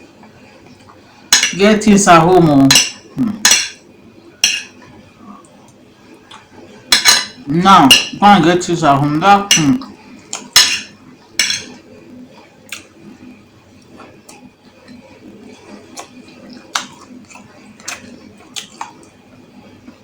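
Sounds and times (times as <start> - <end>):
cutlery scraping a bowl: 6.9 - 8.1, 10.6 - 11.8.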